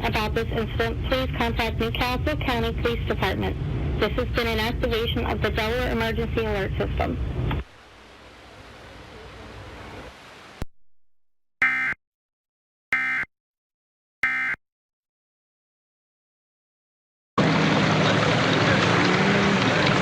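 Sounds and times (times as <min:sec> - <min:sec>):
faint hiss: 0:06.0 - 0:10.6.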